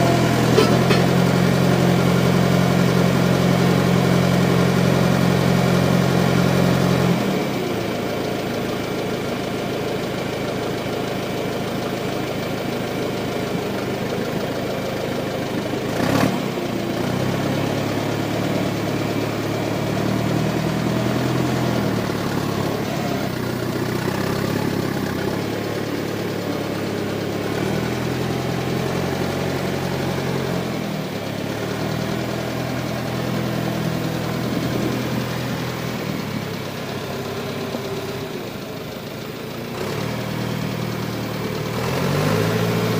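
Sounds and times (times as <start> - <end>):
backhoe engine running: 0.0 - 42.9
sharp metal clank: 0.5 - 1.4.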